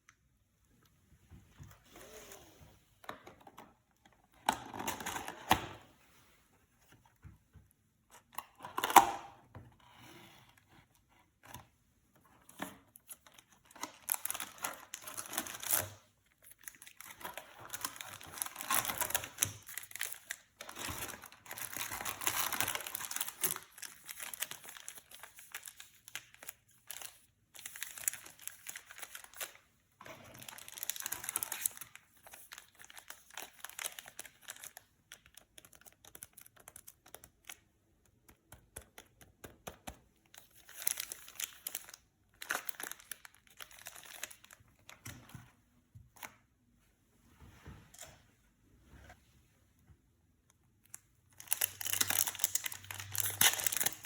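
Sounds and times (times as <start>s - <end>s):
plastic wrapping crinkling: 13.1s - 37.1s, 40.4s - 45.0s, 51.3s - 54.0s.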